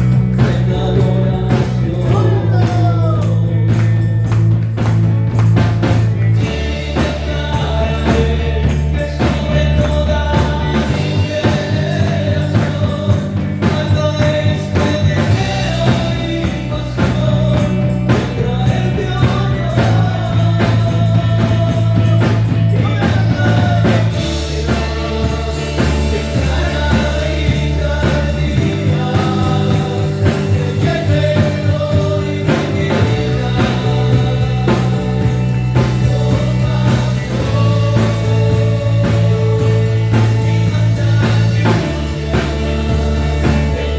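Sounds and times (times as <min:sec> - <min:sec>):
person singing: 0:00.0 - 0:04.0, 0:05.9 - 0:43.9
worship band playing: 0:00.0 - 0:43.9.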